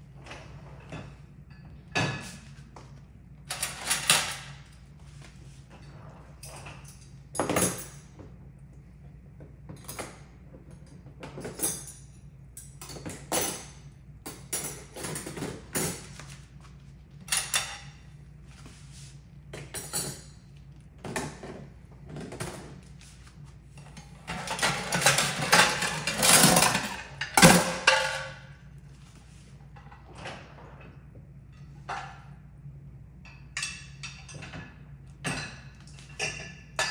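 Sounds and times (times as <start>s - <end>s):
dishes clinking and knocking: 0.8s - 2.6s, 5.8s - 8.4s, 24.2s - 28.5s, 33.3s - 36.9s.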